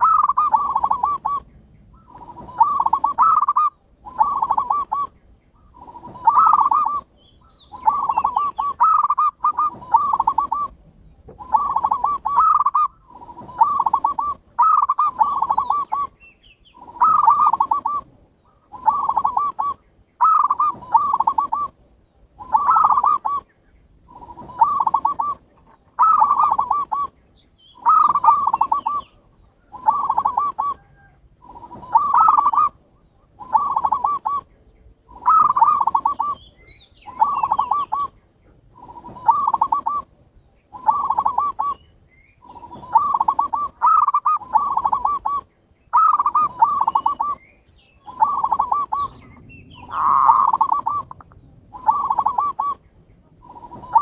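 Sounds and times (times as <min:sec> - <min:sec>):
dove cooing: 0:00.0 - 0:21.8, 0:22.4 - 0:27.2, 0:27.8 - 0:54.0.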